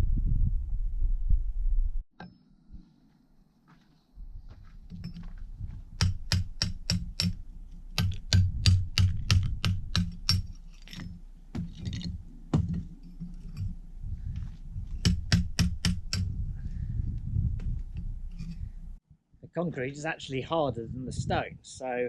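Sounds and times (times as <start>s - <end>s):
hammer chipping cement: 6.0s - 7.4s, 8.0s - 12.8s.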